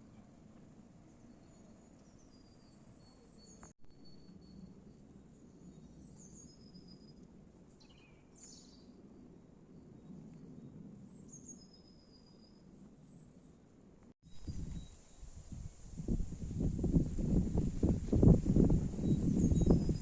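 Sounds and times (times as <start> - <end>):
bird chirps: 1.2 - 9.0, 19.0 - 20.0.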